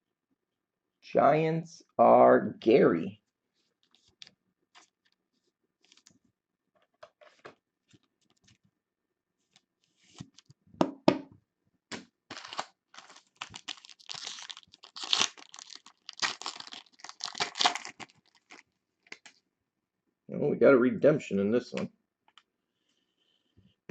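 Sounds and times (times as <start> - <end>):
card pack wrapper tearing: 12.3 - 19.4.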